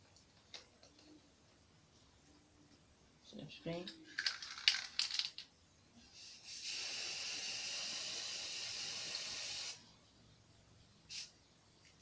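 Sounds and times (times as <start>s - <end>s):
spray paint can hissing: 6.2s - 9.8s, 11.1s - 11.3s.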